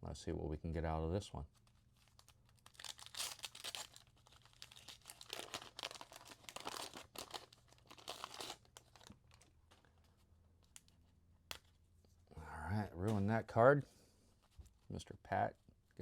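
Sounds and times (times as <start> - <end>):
crackling rustling tears: 2.0 - 9.5
wax paper wrapper tearing: 2.0 - 9.5.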